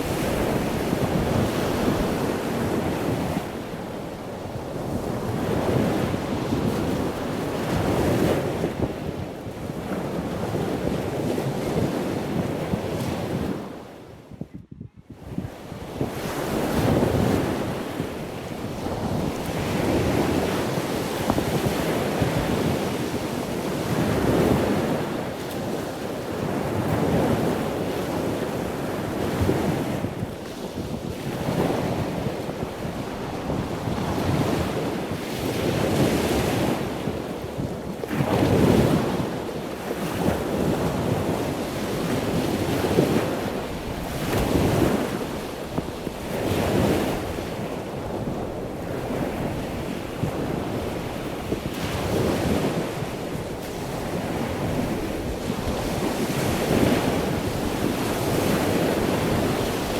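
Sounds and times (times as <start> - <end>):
ocean waves washing in: 0.0 - 8.9.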